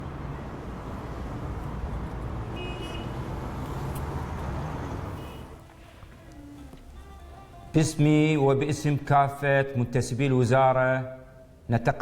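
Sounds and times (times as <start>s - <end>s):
street traffic rumble: 0.0s - 8.0s.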